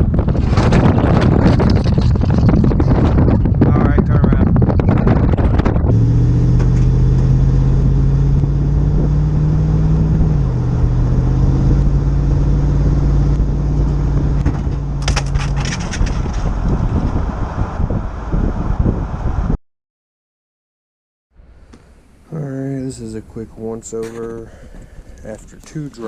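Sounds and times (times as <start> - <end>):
road noise: 0.0 - 19.6, 21.4 - 26.0
truck engine: 4.6 - 19.4
scratchy rattling: 14.5 - 16.8.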